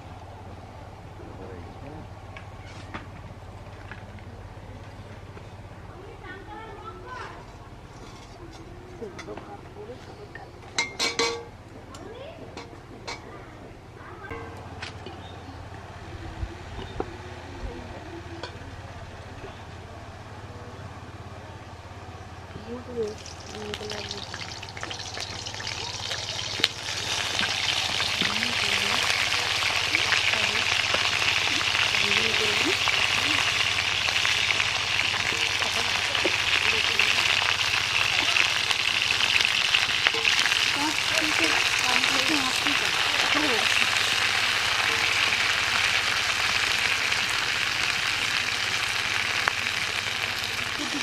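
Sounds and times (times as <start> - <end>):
food sizzling in hot oil: 23.1 - 51.0.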